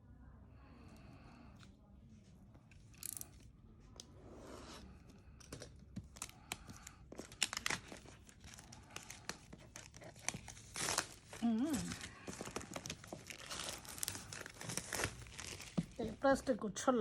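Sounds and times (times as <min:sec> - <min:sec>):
packaging tearing and crinkling: 0:06.1 - 0:16.2.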